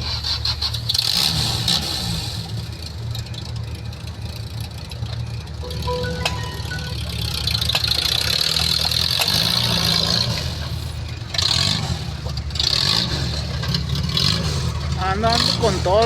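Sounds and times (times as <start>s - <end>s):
truck engine revving: 8.9s - 16.0s.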